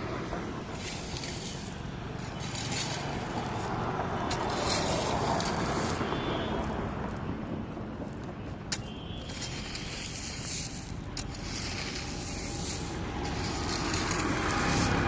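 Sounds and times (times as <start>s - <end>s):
engine running: 0.0s - 6.3s, 9.3s - 15.0s
rushing noise: 0.0s - 7.8s, 8.9s - 15.0s.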